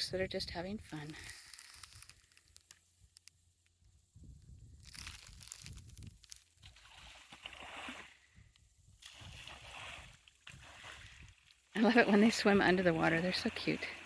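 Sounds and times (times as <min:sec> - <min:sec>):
ducks splashing in water: 0:09.0 - 0:14.0.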